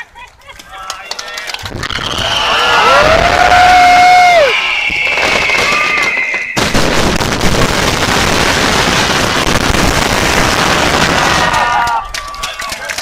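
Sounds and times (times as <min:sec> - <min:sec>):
fireworks bursting and crackling: 0:01.4 - 0:13.0
firework whistle: 0:01.8 - 0:07.9.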